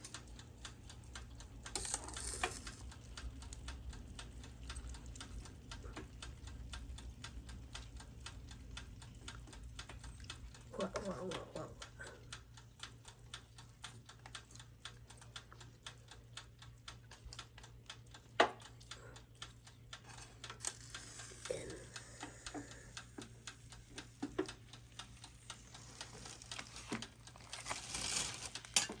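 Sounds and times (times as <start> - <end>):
chicken crackling on a grill: 0.0 - 29.0.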